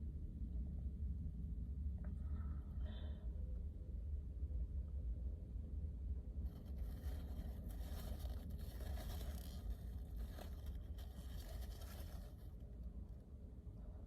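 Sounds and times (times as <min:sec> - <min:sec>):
steady low rumble: 0:00.0 - 0:14.0
rustling handling noise: 0:06.4 - 0:12.9.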